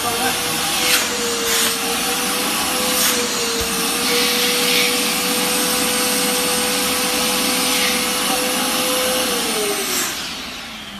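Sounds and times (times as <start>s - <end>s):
vacuum cleaner motor whine: 0.0s - 10.9s.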